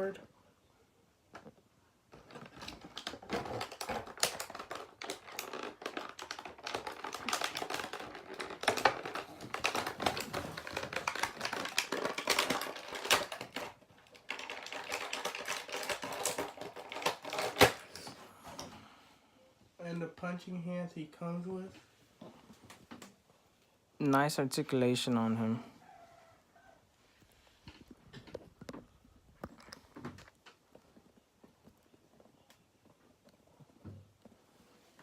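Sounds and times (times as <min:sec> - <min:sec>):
plastic parts clicking and clattering: 0:02.1 - 0:18.8.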